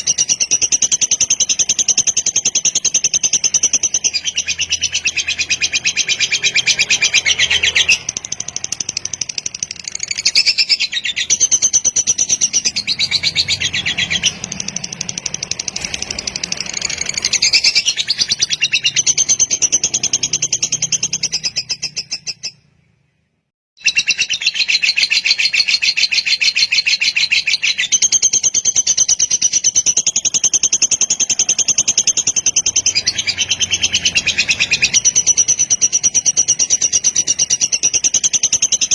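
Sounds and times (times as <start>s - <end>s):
lovebird chattering trills: 0.0s - 22.6s, 23.8s - 38.9s.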